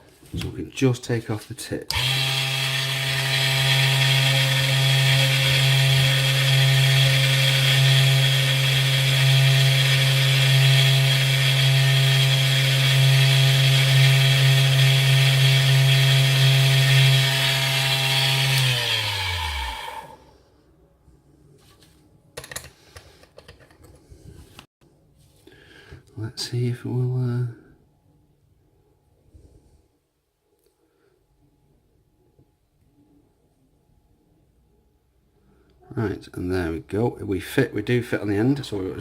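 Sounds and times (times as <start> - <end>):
small power tool motor running: 1.9 - 20.2.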